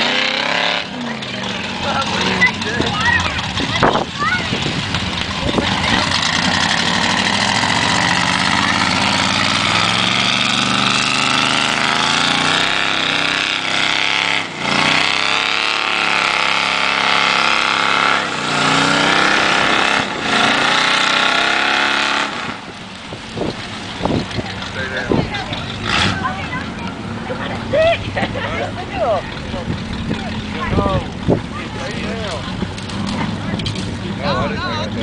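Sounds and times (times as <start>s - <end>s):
engine revving under load: 0.0s - 35.0s.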